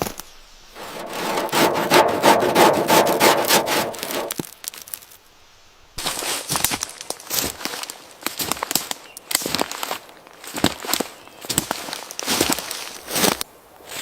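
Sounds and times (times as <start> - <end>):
hand tool rasping strokes: 0.8 - 4.4.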